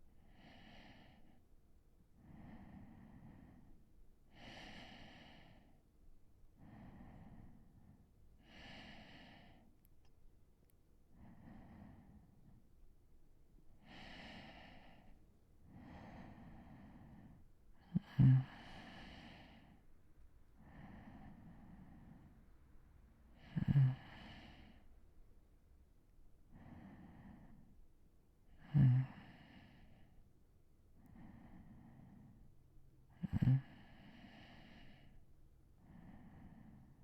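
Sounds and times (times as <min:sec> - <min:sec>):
man breathing slowly: 0:00.2 - 0:10.2, 0:11.0 - 0:12.9, 0:13.6 - 0:25.4, 0:26.4 - 0:37.0
loud low snore: 0:17.8 - 0:19.8, 0:23.4 - 0:24.8, 0:28.6 - 0:30.0, 0:33.1 - 0:35.1.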